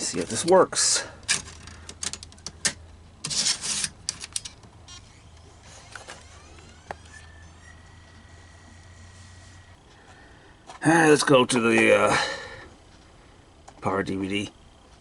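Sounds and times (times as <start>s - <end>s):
disc drive clicks and rustle: 0.0s - 12.0s
disc drive spinning whine: 0.0s - 15.0s.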